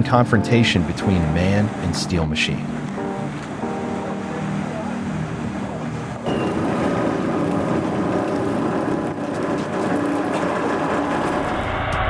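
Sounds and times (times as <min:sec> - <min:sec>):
heavy machinery rumbling and clattering: 0:06.2 - 0:12.0.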